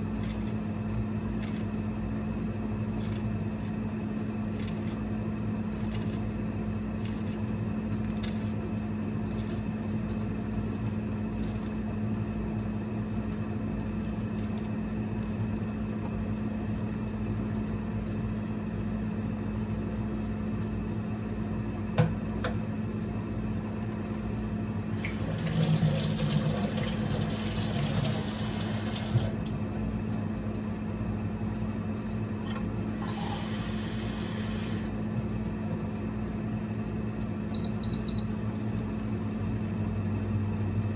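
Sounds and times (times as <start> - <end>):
steady low hum: 0.0 - 40.9
kitchen tap running: 25.0 - 29.5, 33.0 - 34.9.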